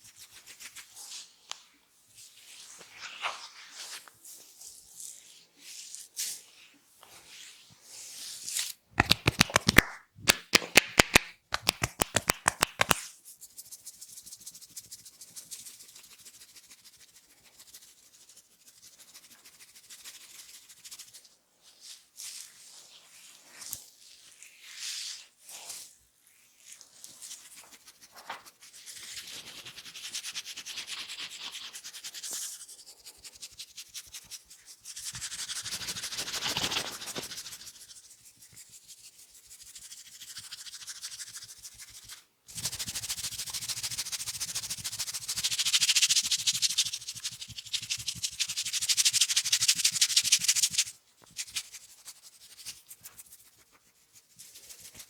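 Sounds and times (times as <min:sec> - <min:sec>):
fingers scratching through hair: 0:08.5 - 0:14.9, 0:26.6 - 0:55.0.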